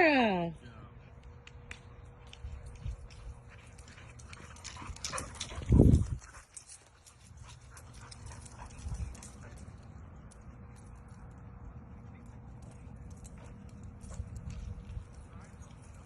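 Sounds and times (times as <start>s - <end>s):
light clicks and rustles: 1.2s - 16.0s
dog moving about: 2.6s - 9.8s.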